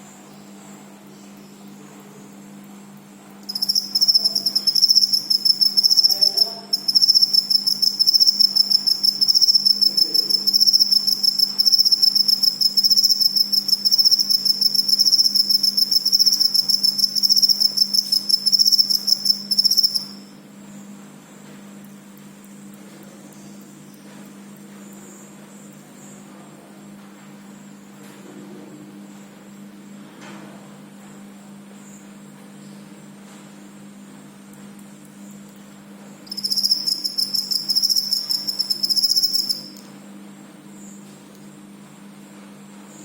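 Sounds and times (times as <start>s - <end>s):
cricket chirping: 3.4s - 20.8s, 36.2s - 40.0s.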